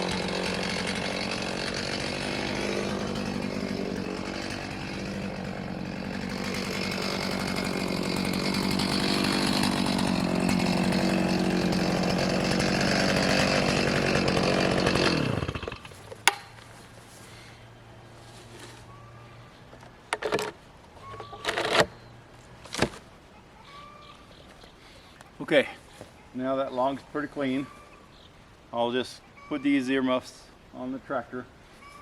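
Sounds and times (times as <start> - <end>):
chainsaw cutting: 0.0 - 16.5.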